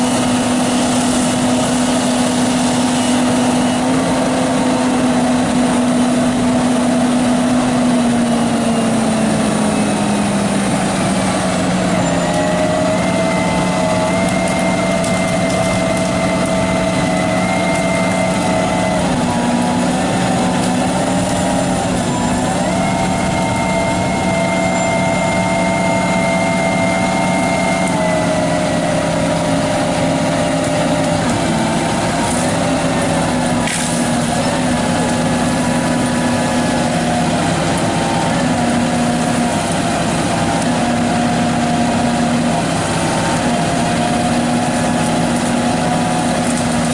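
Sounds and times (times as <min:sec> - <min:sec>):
machinery engine running loud: 0:00.0 - 0:46.9.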